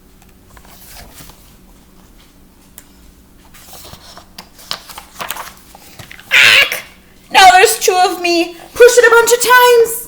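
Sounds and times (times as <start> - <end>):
book pages rustling: 0.5 - 2.8, 3.4 - 6.3.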